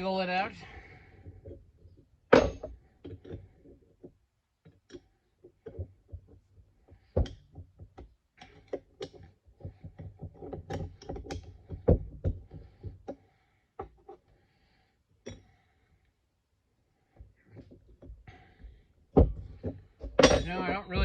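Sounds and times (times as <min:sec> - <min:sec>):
metal clicks and knocks: 0:01.4 - 0:13.2, 0:19.1 - 0:21.0.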